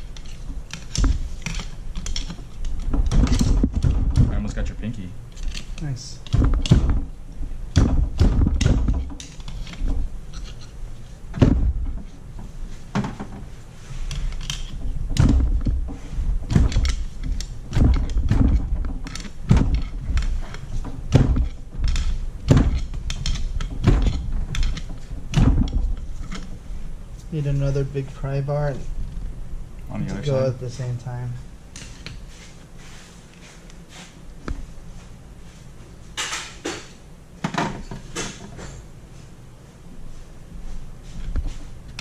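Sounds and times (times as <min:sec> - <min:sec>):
metal tools knocking and clanking: 0:00.2 - 0:04.7.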